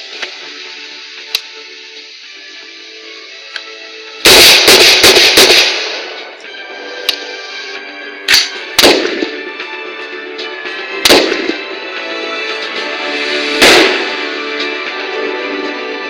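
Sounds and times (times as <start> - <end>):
background music: 0.0 - 16.0
gunshots: 4.2 - 6.3, 8.3 - 9.4, 11.0 - 11.7, 13.6 - 14.3.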